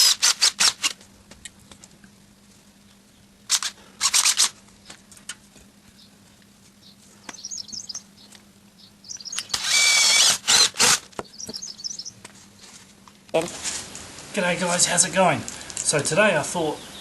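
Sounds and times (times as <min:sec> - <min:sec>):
birds chirping: 0:05.7 - 0:12.3, 0:14.8 - 0:17.0
power drill running: 0:09.4 - 0:11.1.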